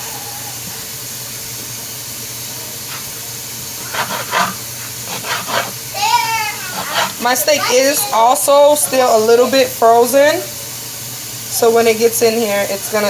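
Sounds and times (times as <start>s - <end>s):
meat sizzling in a pot: 0.0s - 13.0s.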